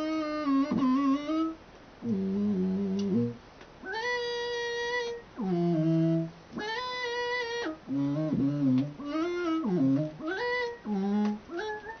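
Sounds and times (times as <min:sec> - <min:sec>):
buzzy electronic tone sliding pitch: 0:07.9 - 0:11.3.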